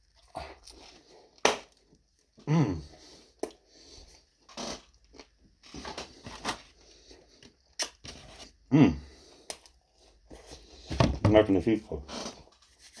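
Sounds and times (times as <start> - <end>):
man chewing food: 0.0 - 10.9
man grunting: 2.4 - 2.9, 8.7 - 9.1.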